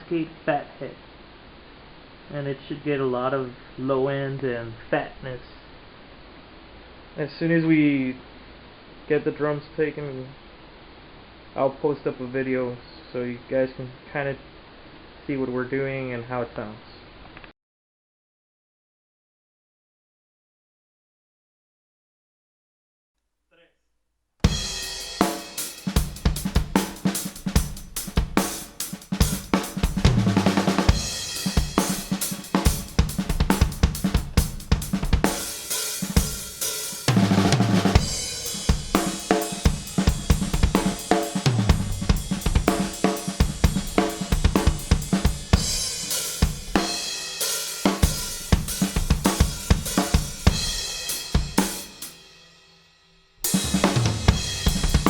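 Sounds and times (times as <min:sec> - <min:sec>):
rock drum kit: 0:24.4 - 0:52.5, 0:53.4 - 0:55.0
bass guitar: 0:37.1 - 0:46.8.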